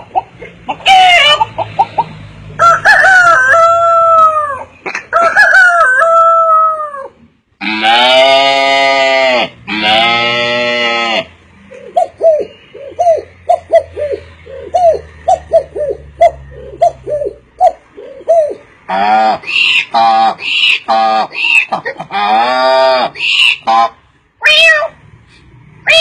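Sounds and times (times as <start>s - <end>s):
man imitating animal calls: 6.5s - 25.0s.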